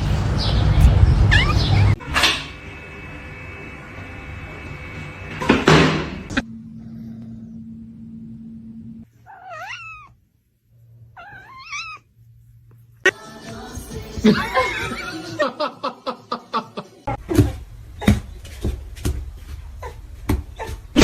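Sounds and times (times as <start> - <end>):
cat meowing: 1.3 - 2.2, 9.2 - 10.2, 11.1 - 12.1.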